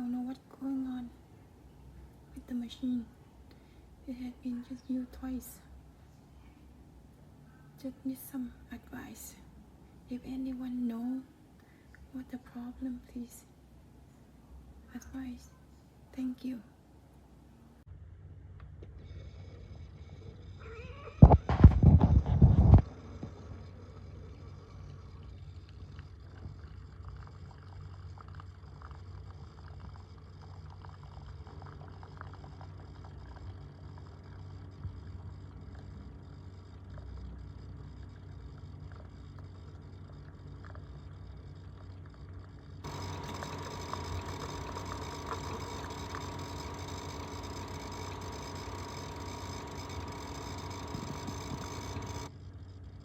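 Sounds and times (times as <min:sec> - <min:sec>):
low hum: 0:42.8 - 0:52.3
coffee maker buzzing and rattling: 0:42.8 - 0:52.4
steady high tone: 0:42.9 - 0:52.3.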